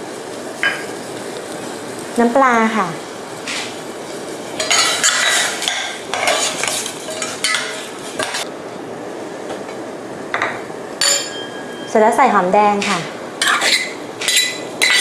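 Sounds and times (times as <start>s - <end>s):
faint sizzle: 0.0s - 15.0s
utensil scraping in a pot: 4.6s - 8.5s, 13.4s - 15.0s.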